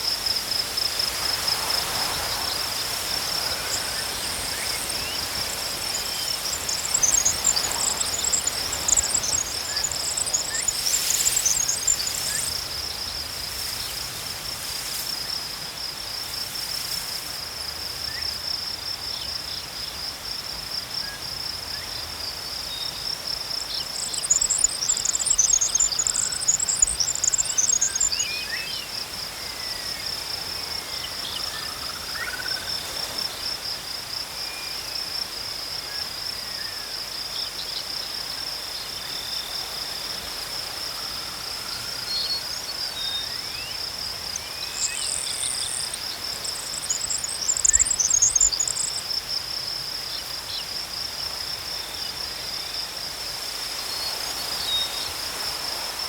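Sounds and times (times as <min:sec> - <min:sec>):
crickets chirping: 0:00.0 - 0:56.0.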